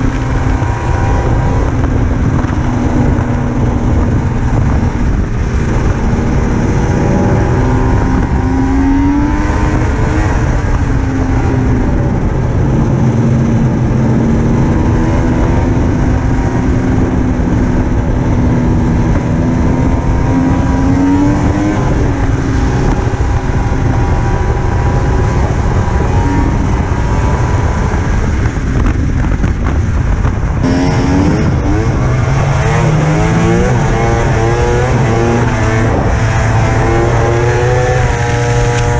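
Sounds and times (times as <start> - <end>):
snowmobile engine running: 0.0 - 38.9.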